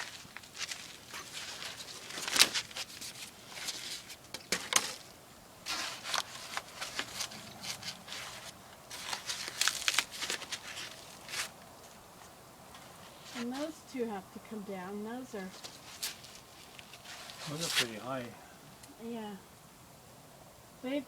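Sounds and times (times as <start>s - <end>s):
material crinkling and rustling: 0.0s - 13.8s, 15.4s - 18.2s.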